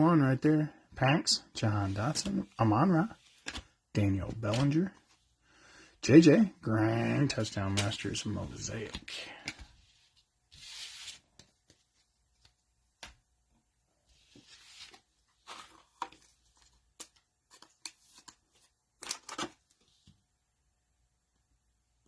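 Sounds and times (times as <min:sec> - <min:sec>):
trading cards sliding together: 0:10.5 - 0:11.5.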